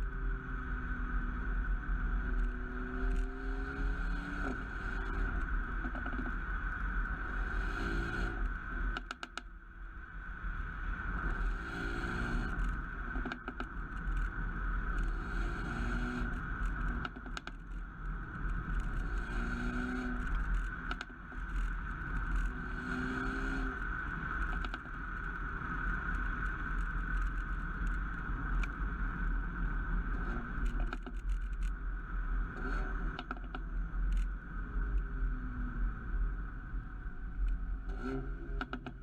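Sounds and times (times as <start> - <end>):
car engine accelerating: 0.6 - 8.8, 11.0 - 14.0, 14.6 - 31.3, 37.7 - 39.0
exhaust pops and crackles: 0.7 - 9.6, 10.5 - 35.1, 37.3 - 39.0.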